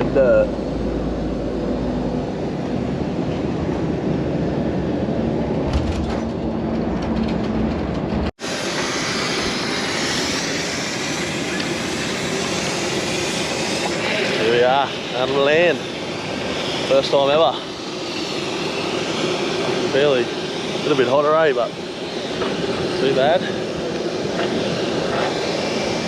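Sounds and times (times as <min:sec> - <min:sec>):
hissy rushing noise: 0:08.4 - 0:26.0.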